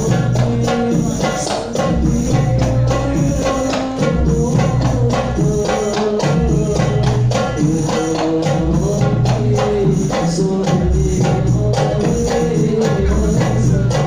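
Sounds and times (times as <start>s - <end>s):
deep drum beats: 0.0s - 14.0s.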